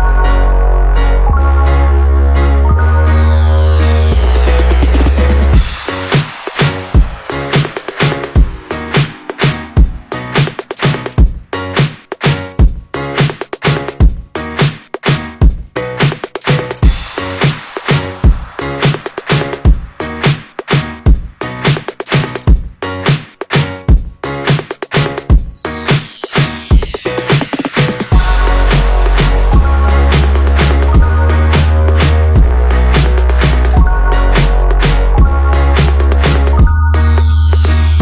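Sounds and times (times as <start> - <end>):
electronic music with synth bass: 0.0 - 38.0
falling synth sweep: 1.3 - 10.5.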